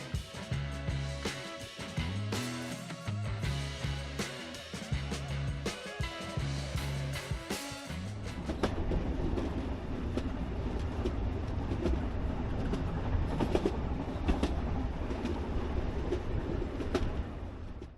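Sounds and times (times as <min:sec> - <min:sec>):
train rumbling along track: 0:06.3 - 0:17.9
wheels clicking over rail joints: 0:08.3 - 0:17.9.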